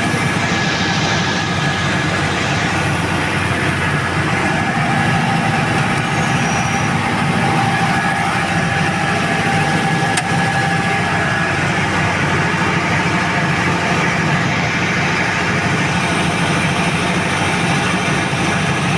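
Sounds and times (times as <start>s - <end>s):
diesel generator running: 0.0s - 18.9s.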